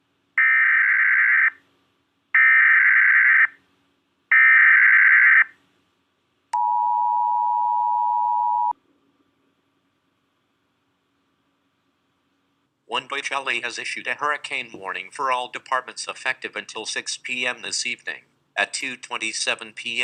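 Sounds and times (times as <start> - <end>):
two-tone attention signal: 6.6 - 8.7.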